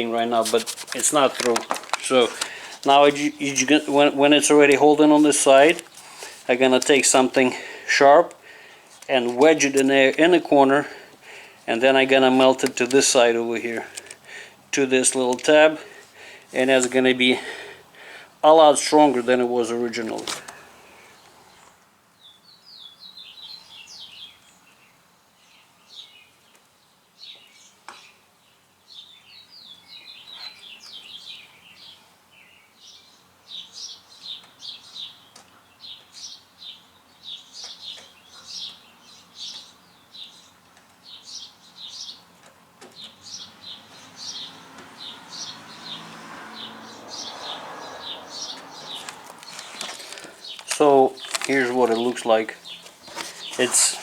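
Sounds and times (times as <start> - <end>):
small bird chirping: 28.9 - 54.0.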